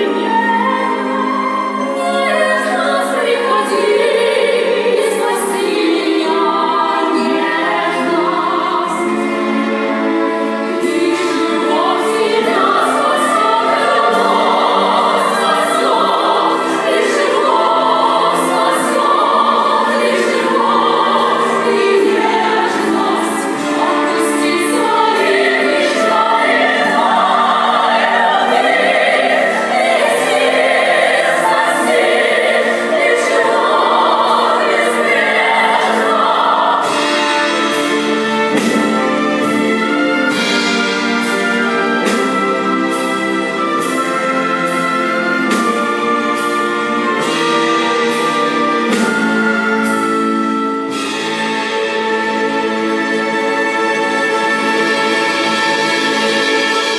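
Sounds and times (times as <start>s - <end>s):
women singing together: 0.0s - 40.6s
instrumental accompaniment: 0.0s - 56.9s.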